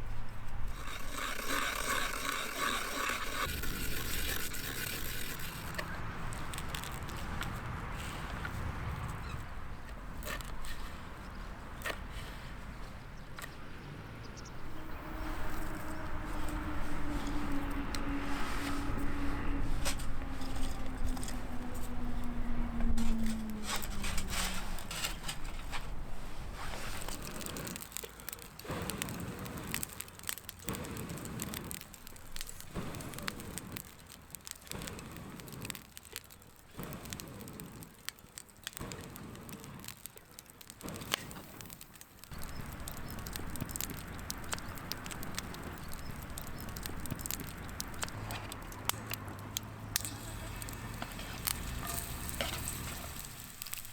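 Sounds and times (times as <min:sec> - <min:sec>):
campfire crackling and popping: 0:00.0 - 0:53.9
low rushing noise: 0:13.9 - 0:26.6.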